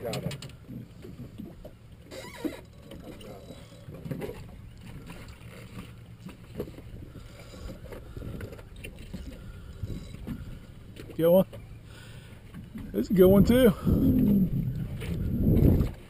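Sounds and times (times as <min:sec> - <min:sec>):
water around boat: 0:00.0 - 0:16.0
wind: 0:00.0 - 0:16.0.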